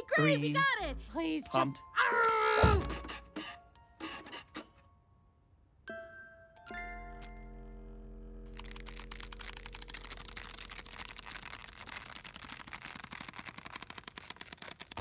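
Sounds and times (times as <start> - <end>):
fast mechanical clicks: 8.5 - 15.0.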